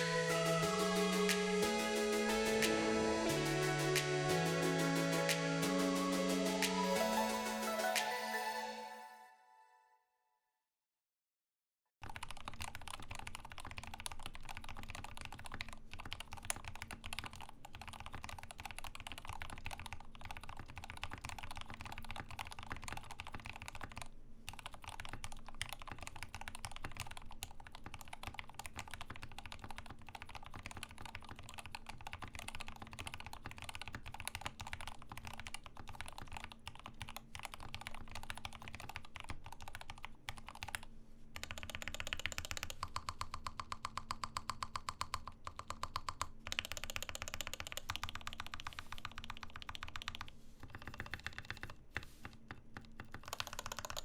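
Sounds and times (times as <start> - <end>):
fast mechanical keyboard typing: 12.0 - 54.0.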